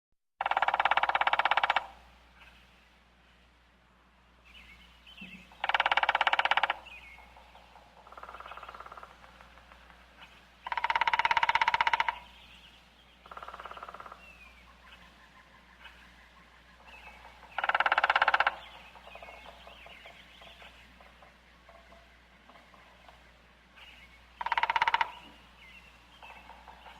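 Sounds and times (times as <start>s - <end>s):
woodpecker drumming on wood: 0.4s - 2.5s, 5.2s - 12.4s, 13.2s - 14.2s, 15.5s - 23.5s, 24.3s - 26.9s
faint bird chirps: 4.5s - 9.5s, 10.2s - 26.9s.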